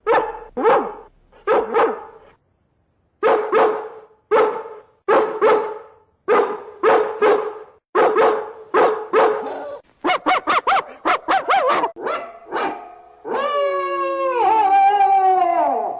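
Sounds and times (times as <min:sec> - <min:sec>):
dog barking: 0:00.0 - 0:02.4, 0:03.2 - 0:13.4.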